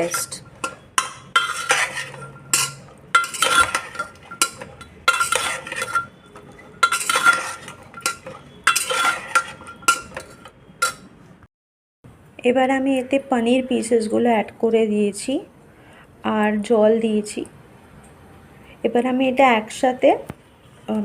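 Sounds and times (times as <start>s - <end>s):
spoon scraping pressure cooker: 0.0s - 11.1s.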